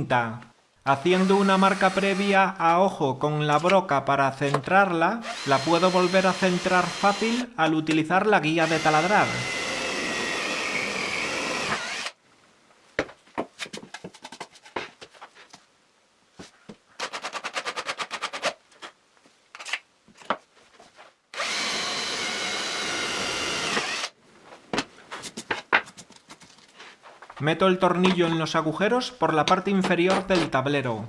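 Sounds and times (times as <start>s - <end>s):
drill press running: 1.5s - 2.2s, 5.2s - 7.3s, 8.7s - 12.1s, 21.4s - 24.1s.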